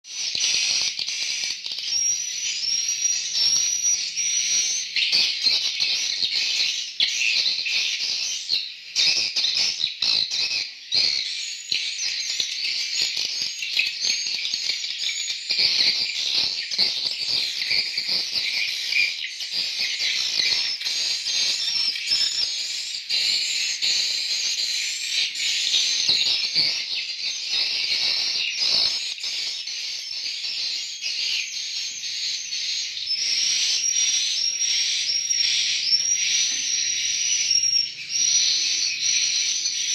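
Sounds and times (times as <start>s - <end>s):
swiftlets twittering: 10.6s - 30.4s, 31.9s - 39.9s.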